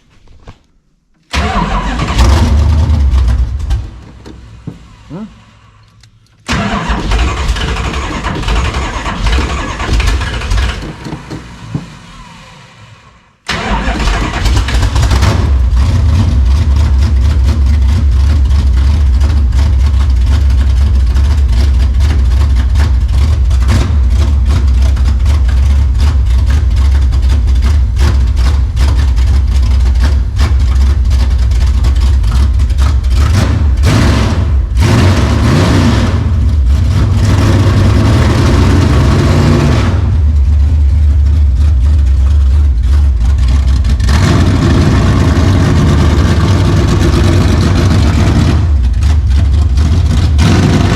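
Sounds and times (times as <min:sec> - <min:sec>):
gasoline engine running: 0:01.3 - 0:12.2.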